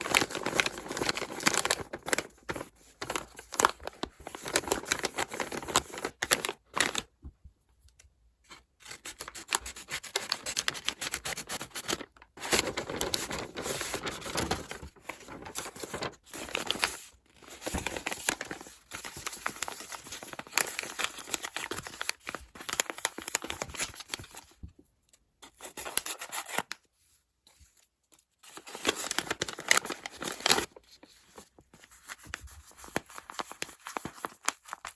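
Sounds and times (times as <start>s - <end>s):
paper crinkling and tearing: 0.0s - 7.1s, 8.8s - 24.5s, 28.5s - 34.9s.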